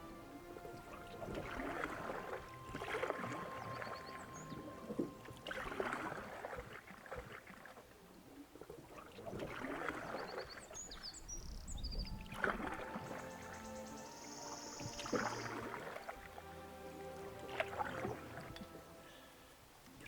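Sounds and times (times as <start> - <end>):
paddle strokes swishing through water: 0.0 - 20.0
high bird chirps: 13.1 - 15.7.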